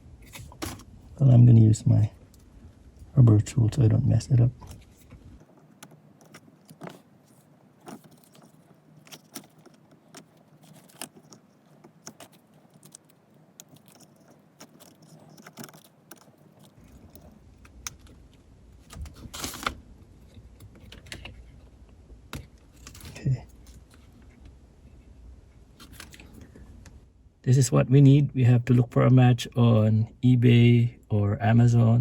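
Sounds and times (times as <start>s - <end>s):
plastic parts clicking and scraping: 4.6s - 21.6s, 25.8s - 27.0s.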